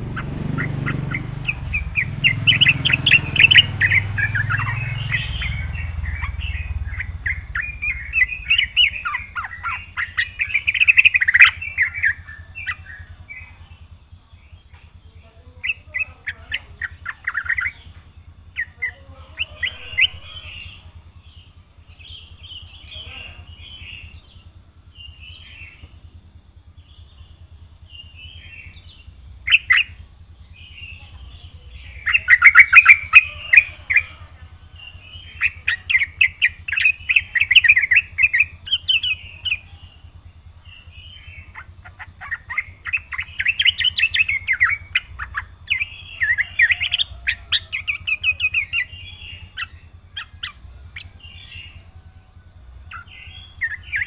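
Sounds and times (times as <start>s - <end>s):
low hum: 0.0s - 18.8s
bird singing chattering phrases: 0.0s - 54.0s.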